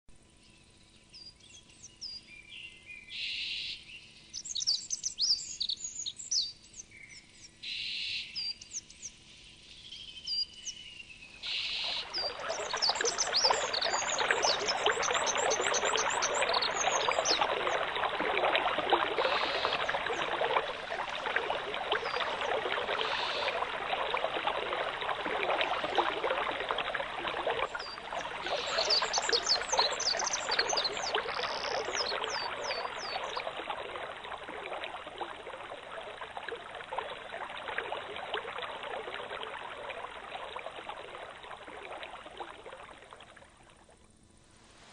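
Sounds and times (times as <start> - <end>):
small birds chirping: 9.8 - 33.6
flowing stream rushing: 11.8 - 40.3.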